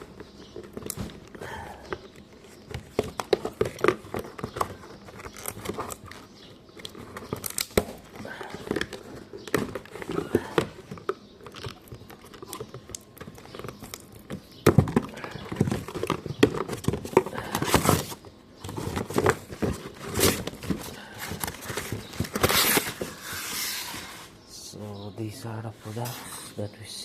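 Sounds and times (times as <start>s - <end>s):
packaging rustling: 0.0s - 24.4s.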